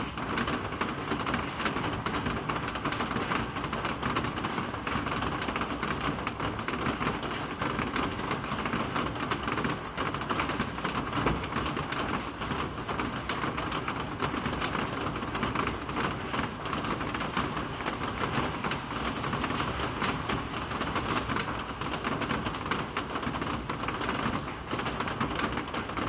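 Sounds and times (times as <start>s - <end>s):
rain falling: 0.0s - 26.0s.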